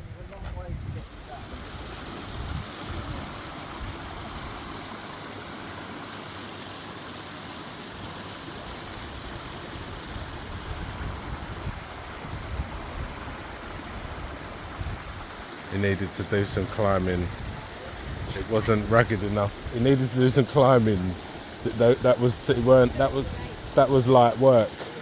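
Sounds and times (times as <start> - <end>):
running water rushing: 0.0 - 25.0.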